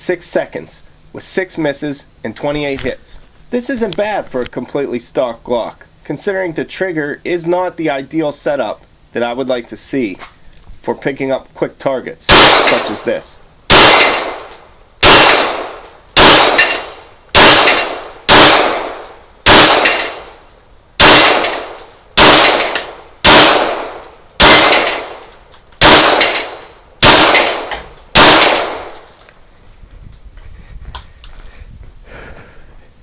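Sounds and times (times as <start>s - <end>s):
pistol shots with ringing tail: 12.3s - 20.4s, 21.0s - 29.1s.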